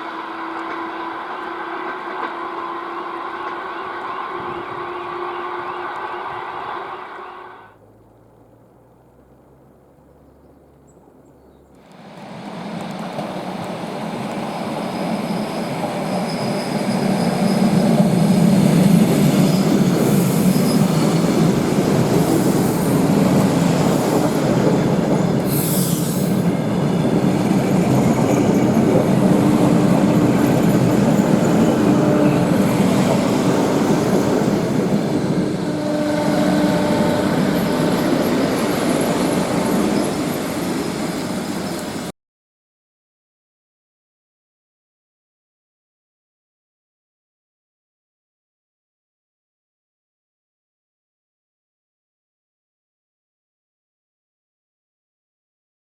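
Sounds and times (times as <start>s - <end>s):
train wheels rumbling on rail: 0.0s - 7.9s, 11.8s - 42.1s
wheel squeals: 12.2s - 42.1s.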